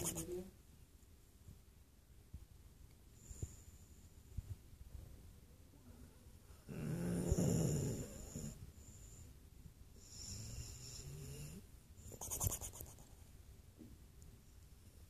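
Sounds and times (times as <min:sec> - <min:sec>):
person snoring: 0:06.7 - 0:08.6.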